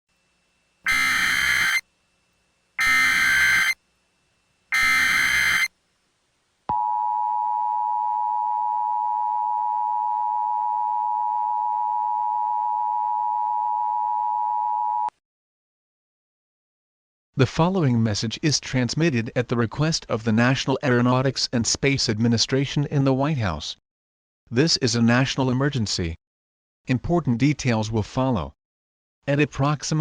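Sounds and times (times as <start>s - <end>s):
raspy digital data bursts: 0.9s - 1.8s, 2.8s - 3.8s, 4.7s - 5.7s
two-tone attention signal: 0.9s - 1.8s, 2.8s - 3.8s, 4.7s - 5.7s.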